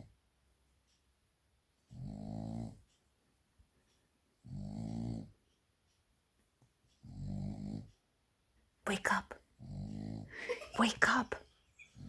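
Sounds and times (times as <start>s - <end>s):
dog snoring: 1.8s - 2.9s, 4.4s - 5.4s, 7.0s - 8.0s, 9.6s - 10.3s.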